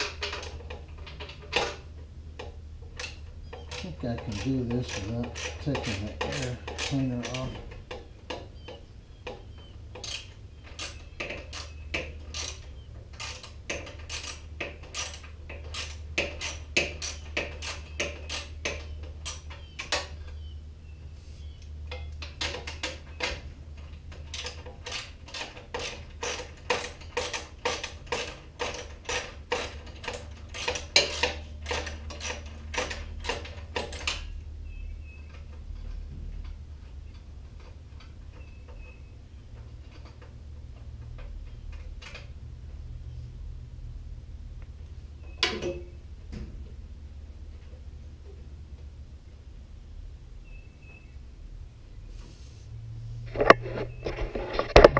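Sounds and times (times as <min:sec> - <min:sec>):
steady low hum: 0:00.0 - 0:54.9
ratchet wrench clicking: 0:03.0 - 0:07.5, 0:10.0 - 0:19.4, 0:24.3 - 0:34.2.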